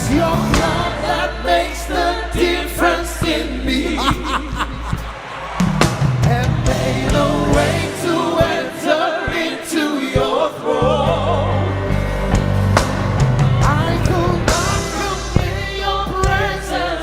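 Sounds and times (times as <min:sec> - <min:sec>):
voices singing slow melody: 0:00.0 - 0:05.4, 0:06.2 - 0:17.0
band with bass and drums: 0:00.0 - 0:09.4, 0:10.2 - 0:17.0.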